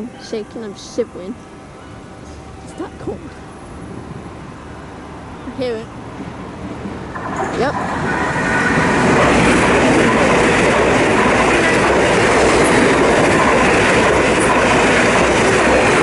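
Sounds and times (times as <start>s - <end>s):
train passing at speed: 0.0s - 16.0s.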